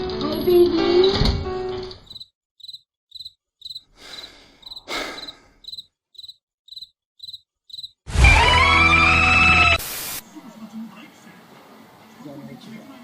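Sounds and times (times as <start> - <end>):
cricket chirping: 2.0 - 8.0.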